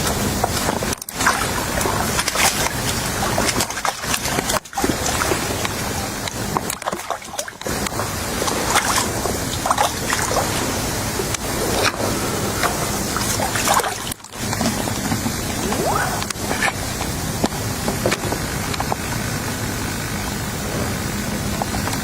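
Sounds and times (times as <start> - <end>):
water splashing and sloshing: 0.0 - 22.0.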